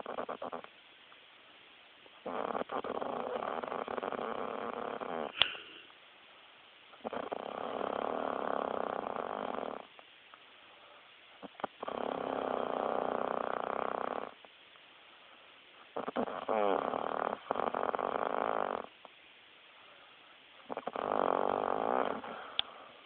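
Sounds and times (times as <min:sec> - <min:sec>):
woman snoring: 0:00.0 - 0:00.7, 0:02.2 - 0:05.9, 0:07.0 - 0:09.9, 0:11.4 - 0:14.4, 0:16.0 - 0:18.9, 0:20.7 - 0:22.9.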